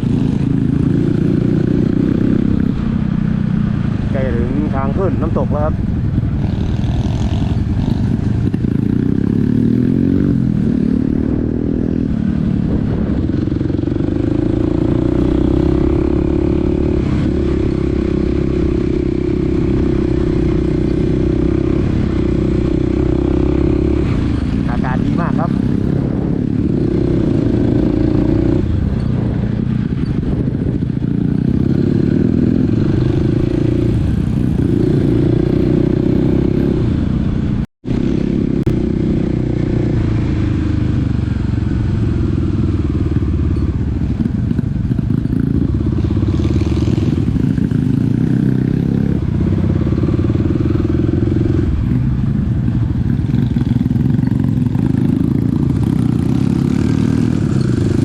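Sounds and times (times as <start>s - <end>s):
dirt bike engine revving: 6.4s - 28.8s, 53.2s - 58.0s.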